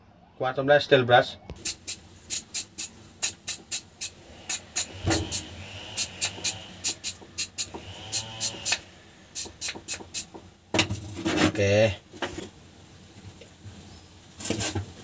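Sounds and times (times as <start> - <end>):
wire brush scrubbing: 1.6 - 10.4.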